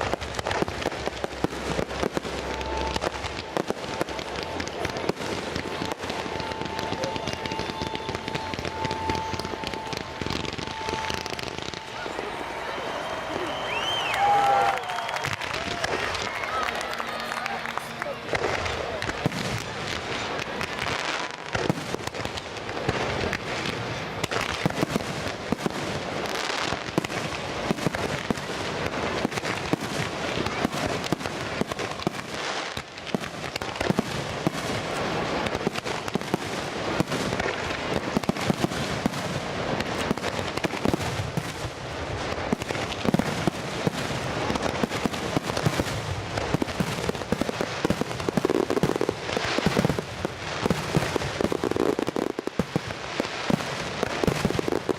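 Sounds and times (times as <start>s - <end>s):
fireworks bangs and crackles: 0.0s - 54.9s.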